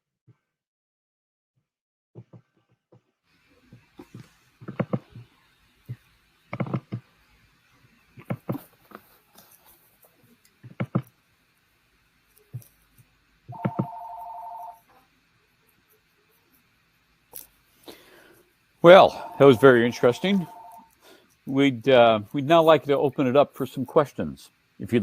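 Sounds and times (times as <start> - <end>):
electronic phone ring: 13.5 - 14.8, 18.9 - 20.9.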